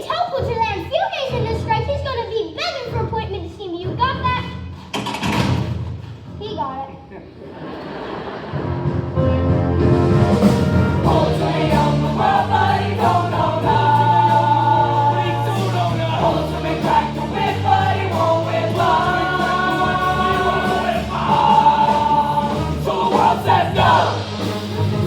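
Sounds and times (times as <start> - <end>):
instrumental backing: 8.6 - 25.0
group of voices singing: 10.9 - 25.0.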